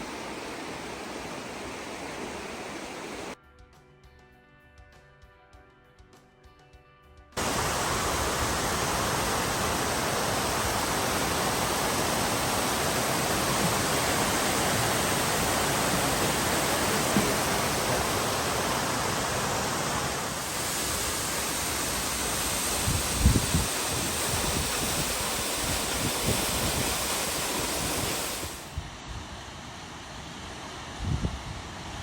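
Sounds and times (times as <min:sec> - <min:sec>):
waterfall rushing: 0:00.0 - 0:03.4, 0:07.4 - 0:28.7.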